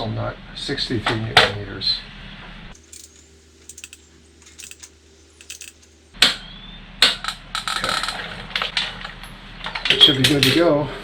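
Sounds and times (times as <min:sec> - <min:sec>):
hand tools clicking on metal: 0:02.8 - 0:05.9
ratchet rattling clicks: 0:02.8 - 0:05.9.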